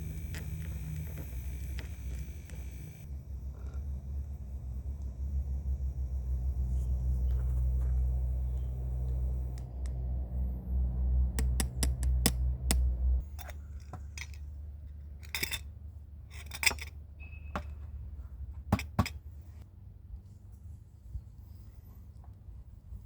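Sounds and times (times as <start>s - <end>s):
low steady hum: 0.0s - 23.0s
coffee gear clinking: 13.2s - 15.7s, 16.3s - 17.8s.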